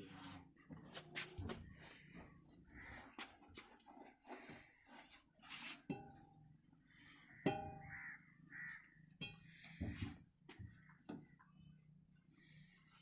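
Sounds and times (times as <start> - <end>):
caw-like bird calls: 2.7 - 3.2, 7.1 - 10.0
ringing metallic knocks: 7.4 - 8.0.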